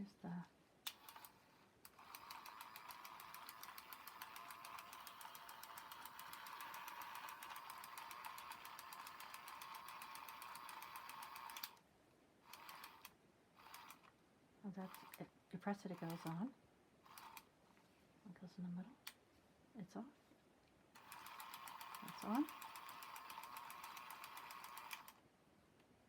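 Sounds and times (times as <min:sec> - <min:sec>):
toy helicopter motor whirring: 0:01.0 - 0:11.8, 0:12.5 - 0:14.1, 0:14.8 - 0:15.2, 0:15.8 - 0:16.4, 0:17.1 - 0:17.4, 0:21.0 - 0:25.2.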